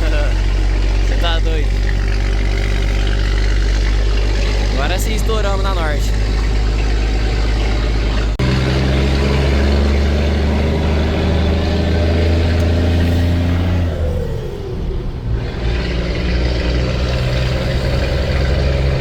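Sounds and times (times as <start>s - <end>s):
diesel truck engine running: 0.0s - 19.0s.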